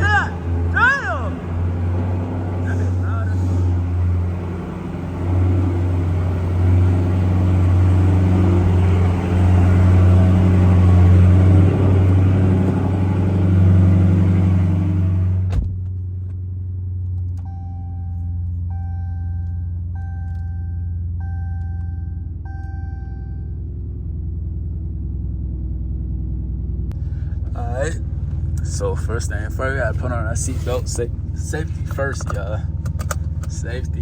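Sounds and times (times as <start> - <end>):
car engine idling: 0.0 - 34.0
car door thumping shut: 15.4 - 15.8
seatbelt reminder chime beeping: 17.4 - 23.6.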